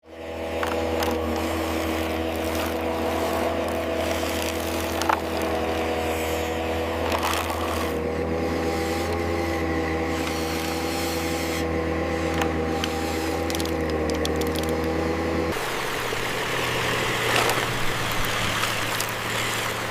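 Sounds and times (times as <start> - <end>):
motor and hydraulic pump whine: 0.0 - 19.9
soil scraping and crunching: 0.2 - 19.9
sharp clicks: 12.4 - 14.9.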